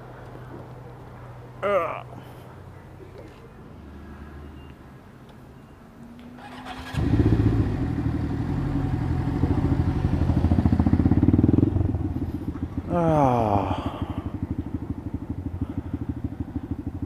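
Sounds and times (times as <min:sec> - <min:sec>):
motorcycle engine running: 0:06.7 - 0:17.0.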